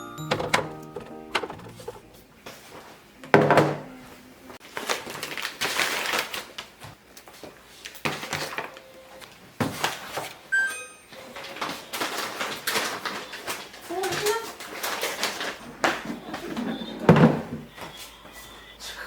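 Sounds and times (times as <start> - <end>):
containers knocking and clattering: 0.2 - 2.1
refrigerator door handled: 0.2 - 2.1.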